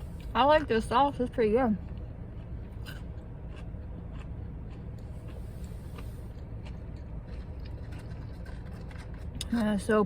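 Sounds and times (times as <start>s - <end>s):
chewing clicks: 1.9s - 5.4s, 6.0s - 9.6s.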